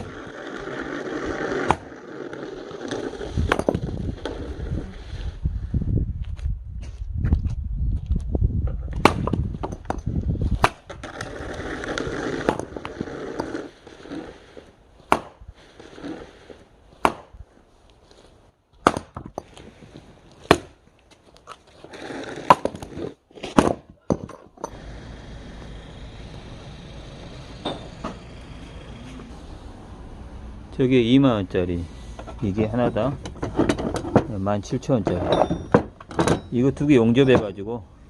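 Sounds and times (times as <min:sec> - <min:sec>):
steady low hum: 0:24.7 - 0:30.8.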